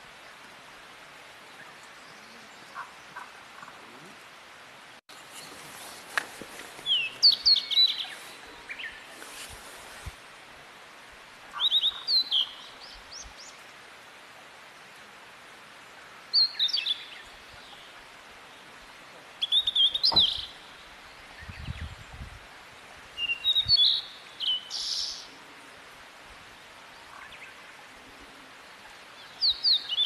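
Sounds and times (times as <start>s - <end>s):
songbird singing: 1.4s - 4.3s, 5.1s - 10.3s, 11.4s - 13.8s, 16.2s - 22.4s, 23.1s - 30.0s.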